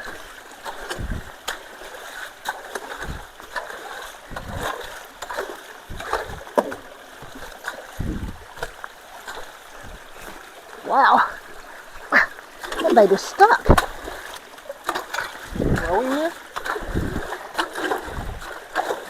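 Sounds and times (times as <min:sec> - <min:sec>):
water running and splashing: 0:00.0 - 0:19.0
knocks and low thumps: 0:04.3 - 0:04.7, 0:05.9 - 0:08.8, 0:09.8 - 0:10.2, 0:13.6 - 0:14.2.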